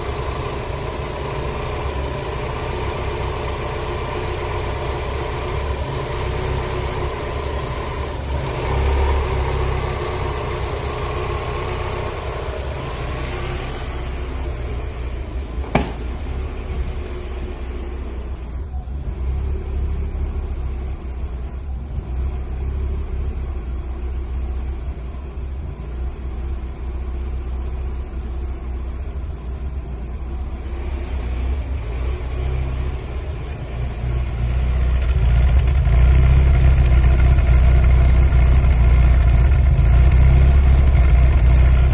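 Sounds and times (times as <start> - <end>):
car engine idling roughly: 0.0 - 13.4, 34.5 - 41.9.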